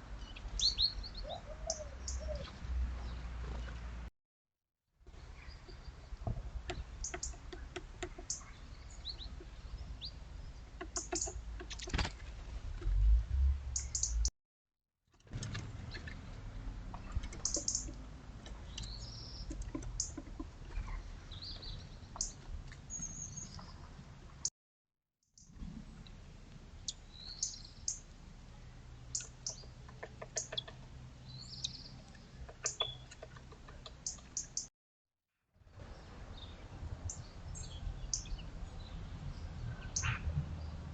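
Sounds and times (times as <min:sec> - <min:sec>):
small birds chirping: 0:00.1 - 0:03.9, 0:05.1 - 0:12.0, 0:13.8 - 0:14.3, 0:17.0 - 0:23.8, 0:26.8 - 0:28.1, 0:29.0 - 0:34.7, 0:35.9 - 0:40.8
low outdoor rumble: 0:05.1 - 0:14.3, 0:15.3 - 0:24.4.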